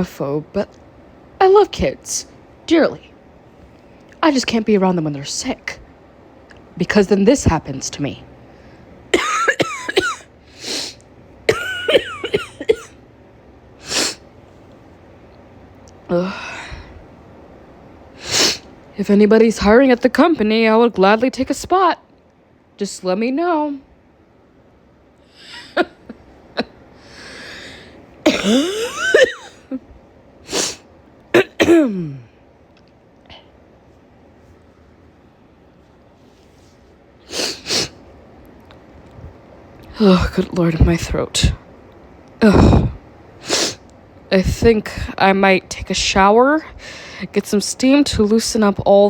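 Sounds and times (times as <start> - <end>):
woman coughing: 9.2 - 10.3, 11.5 - 13.0, 25.4 - 26.8, 28.2 - 29.8, 31.4 - 32.3.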